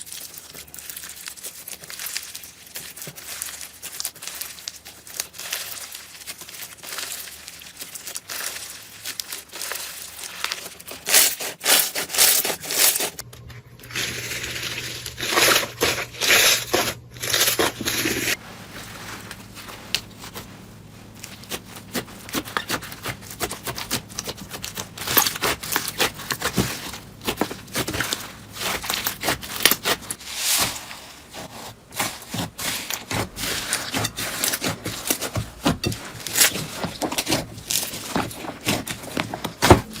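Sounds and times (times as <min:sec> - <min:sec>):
slime squeezed by hands crackling: 0:00.0 - 0:13.2.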